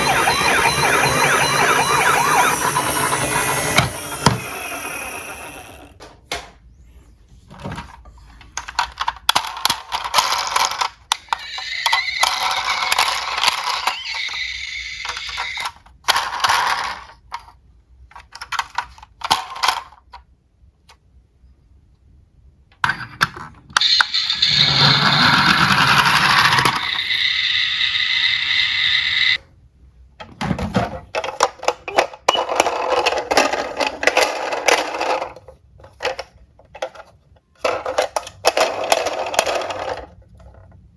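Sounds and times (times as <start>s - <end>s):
toy cars clattering and rolling: 7.6s - 20.3s, 22.8s - 29.3s, 30.6s - 40.9s.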